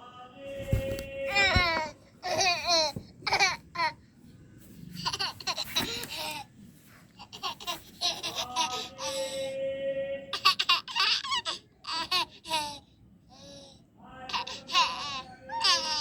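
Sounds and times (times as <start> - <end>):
baby laughing and babbling: 0.7 - 4.0, 5.0 - 6.5, 7.2 - 9.2, 10.4 - 12.9, 14.3 - 16.0.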